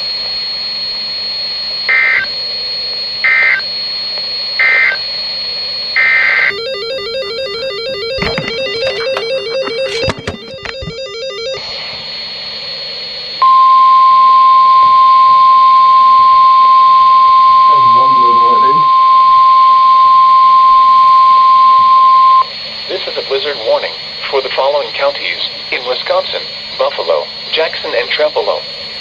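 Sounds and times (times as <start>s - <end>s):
loud steady alarm tone: 0.0s - 29.0s
warbling data tone bursts: 0.6s - 29.0s
buzzy warbling data: 1.9s - 2.4s, 3.2s - 3.7s, 4.5s - 5.1s, 5.9s - 12.5s.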